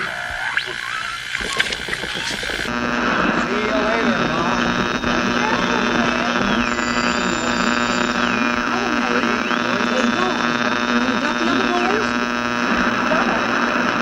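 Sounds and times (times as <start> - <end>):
radio interference hum and buzz: 0.0 - 14.0
high sliding whistle: 4.7 - 10.0.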